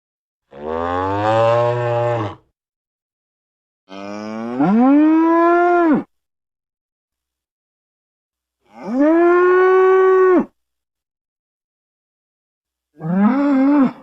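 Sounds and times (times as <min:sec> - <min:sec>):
cattle mooing: 0:00.5 - 0:02.4.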